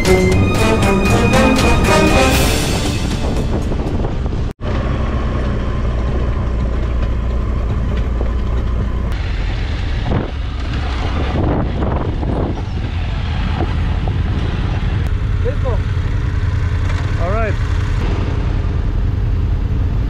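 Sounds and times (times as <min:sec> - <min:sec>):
wind noise: 0:01.6 - 0:04.6, 0:07.6 - 0:15.4
motorcycle engine running: 0:03.7 - 0:12.8, 0:13.7 - 0:20.0.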